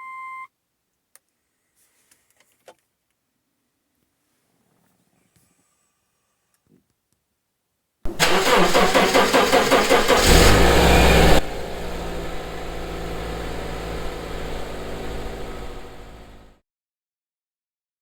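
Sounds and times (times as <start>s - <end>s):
car engine cranking and starting: 8.1s - 16.5s
car engine idling: 8.1s - 16.5s.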